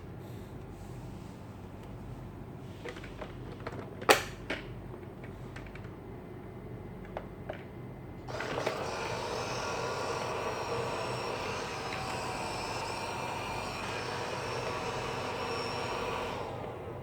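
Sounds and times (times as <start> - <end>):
robot vacuum cleaner running: 8.3 - 17.0.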